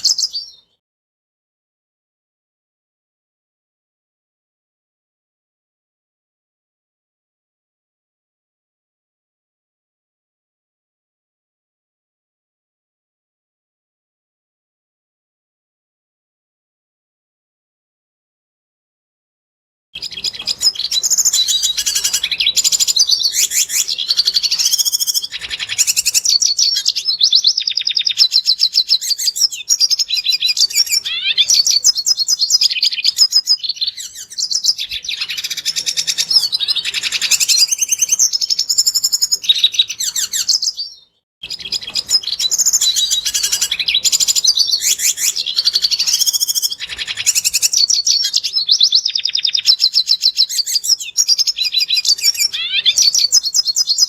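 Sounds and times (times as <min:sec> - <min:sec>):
bird twittering song: 0:00.0 - 0:00.8, 0:20.0 - 0:54.0.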